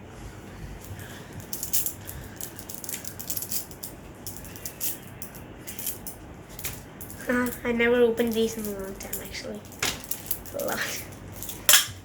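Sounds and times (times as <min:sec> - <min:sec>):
small magnets clicking together: 0:08.2 - 0:11.9.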